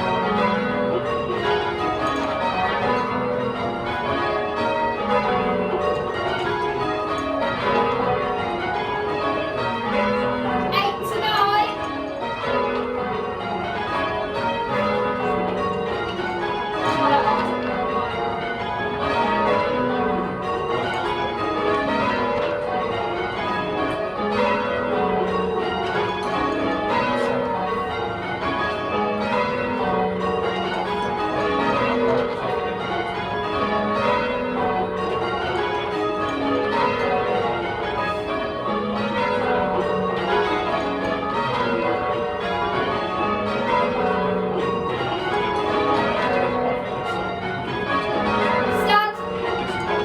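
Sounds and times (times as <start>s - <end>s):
church bells change ringing: 0.0s - 50.0s.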